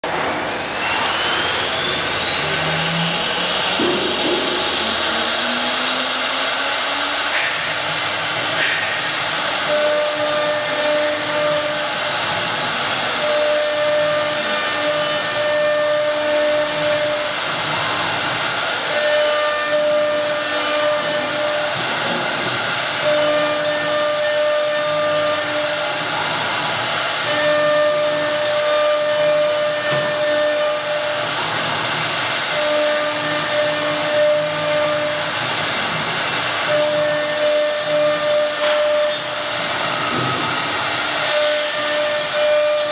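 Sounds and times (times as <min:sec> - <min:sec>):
humming tone: 0:00.0 - 0:07.4
wood router whining: 0:00.0 - 0:42.9.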